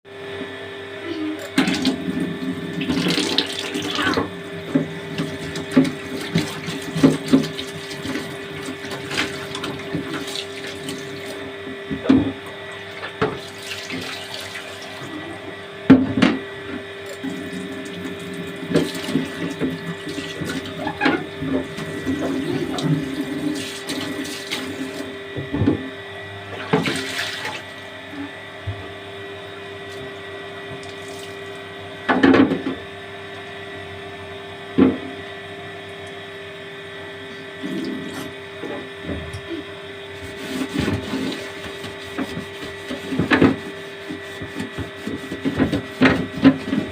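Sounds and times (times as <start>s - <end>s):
tap water running into sink: 1.6s - 11.4s, 17.1s - 25.1s.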